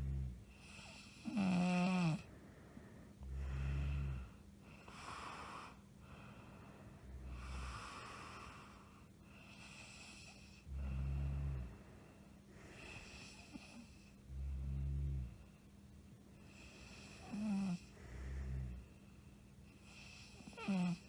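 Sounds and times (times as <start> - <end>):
woman snoring: 0.0 - 2.3, 3.2 - 5.8, 7.3 - 8.8, 9.6 - 11.7, 12.7 - 15.4, 16.6 - 18.8, 19.9 - 21.0
breathy hissing breaths: 0.0 - 21.0.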